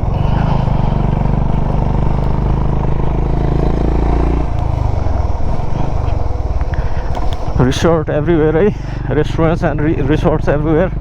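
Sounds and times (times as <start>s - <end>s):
motorcycle engine running: 0.0s - 11.0s.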